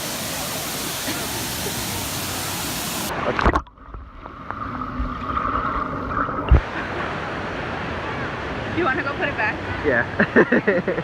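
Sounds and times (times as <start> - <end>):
water washing and splashing: 0.0 - 7.2.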